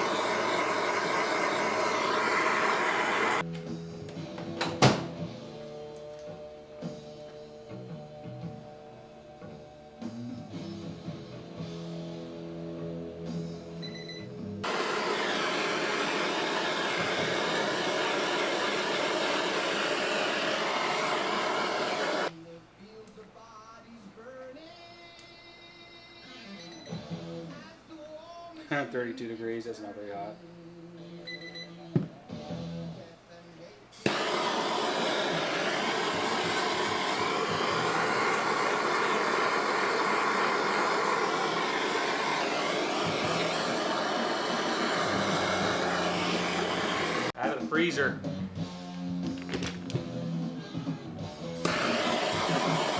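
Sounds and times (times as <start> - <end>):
heat gun blowing: 0.0 - 3.5, 14.6 - 22.3, 34.0 - 47.4, 51.5 - 52.9.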